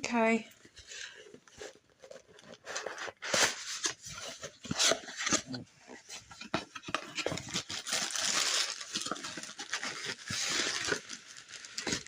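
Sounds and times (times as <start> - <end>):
packaging crinkling and rustling: 0.6 - 12.0
tearing: 7.1 - 12.0.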